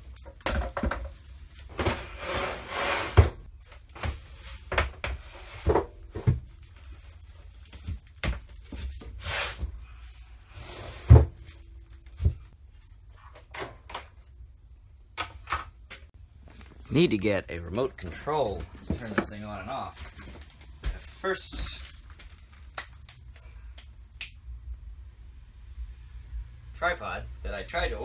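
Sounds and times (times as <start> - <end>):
objects knocking and clunking: 0.0 - 2.2, 3.1 - 9.8, 10.9 - 14.5, 15.1 - 16.2, 18.0 - 21.0.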